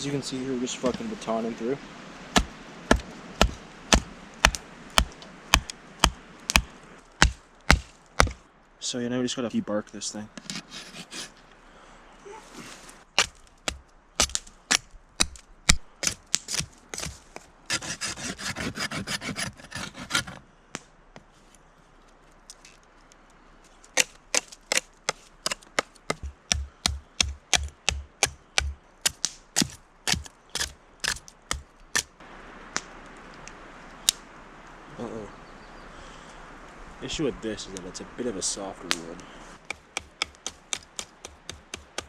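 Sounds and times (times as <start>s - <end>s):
blade chopping wood: 2.3s - 8.4s, 13.2s - 20.4s, 24.0s - 32.1s, 39.7s - 42.0s
blade scraping wood: 10.4s - 11.4s, 16.0s - 20.4s.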